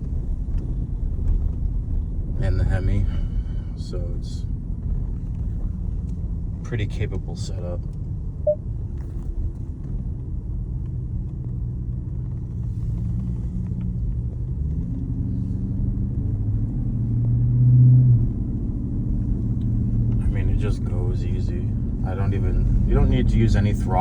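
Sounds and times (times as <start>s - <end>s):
car engine rumbling: 0.0s - 24.0s.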